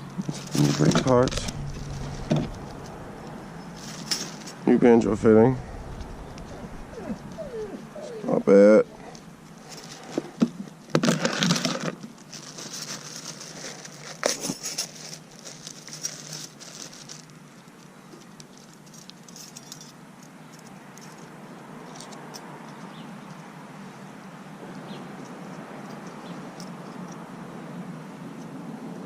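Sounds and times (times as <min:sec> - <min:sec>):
packaging crinkling and rustling: 0:11.0 - 0:17.9.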